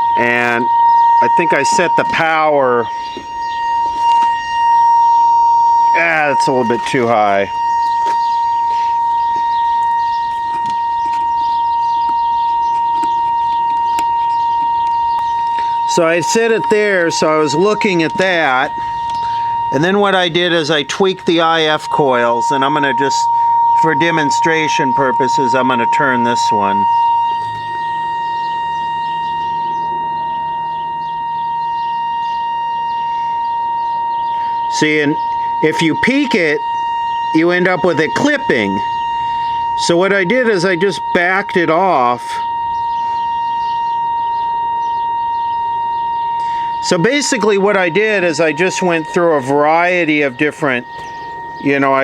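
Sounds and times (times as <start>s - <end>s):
radio test tone: 0.0s - 52.0s.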